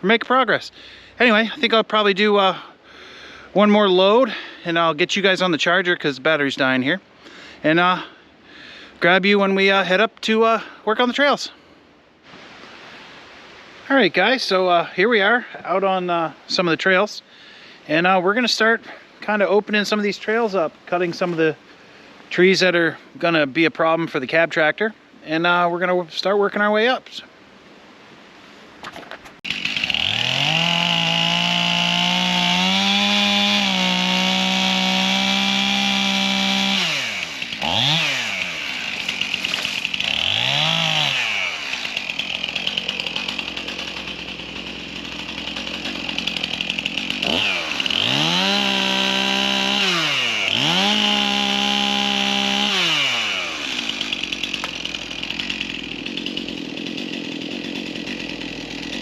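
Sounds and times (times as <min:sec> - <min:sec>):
chainsaw revving and idling: 0:29.5 - 0:59.0.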